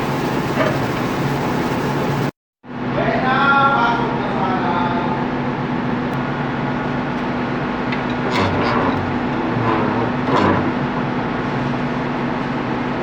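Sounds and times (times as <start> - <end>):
low hum: 0.0 - 2.3
machinery droning: 0.0 - 2.3.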